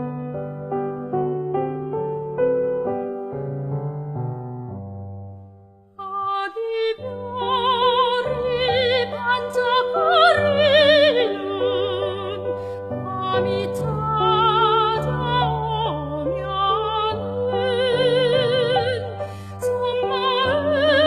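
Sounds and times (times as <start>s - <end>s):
piano accompaniment: 0.0s - 21.0s
soprano singing with vibrato: 6.0s - 21.0s.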